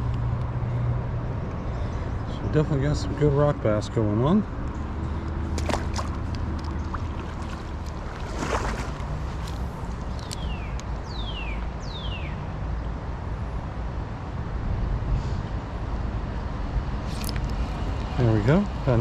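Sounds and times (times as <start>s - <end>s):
wind: 0.0s - 19.0s
creek water rushing: 4.9s - 10.6s.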